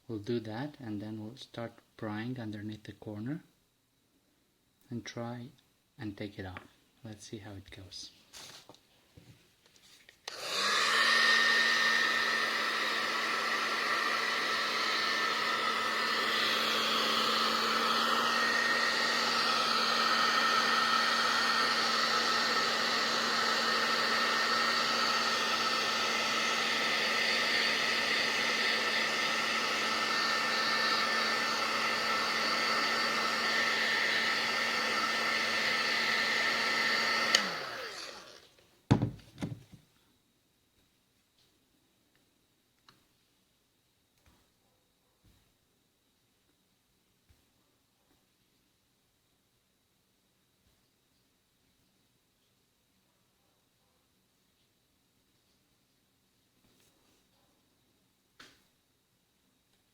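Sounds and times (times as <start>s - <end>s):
heat gun humming and whining: 10.2s - 39.6s
motor winding down: 10.3s - 38.5s.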